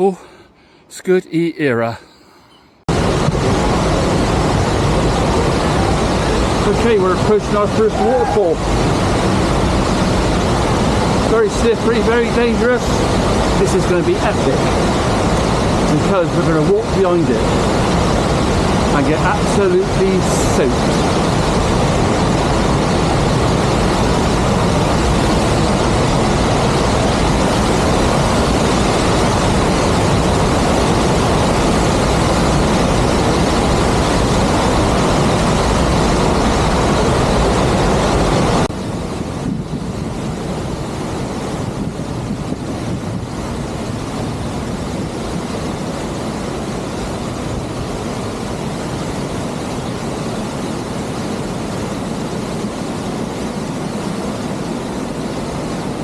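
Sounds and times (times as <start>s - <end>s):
waterfall rushing: 2.9s - 11.6s.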